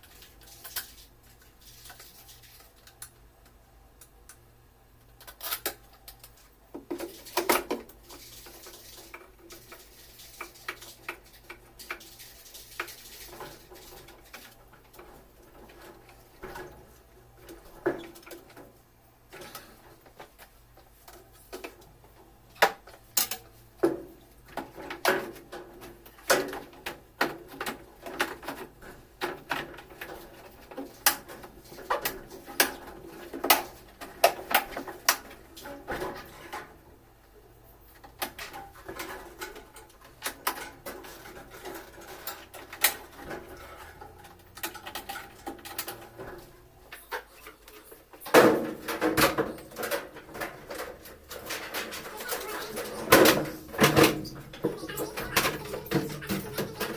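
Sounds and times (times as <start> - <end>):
clicks and knocks of tools: 22.6 - 23.5.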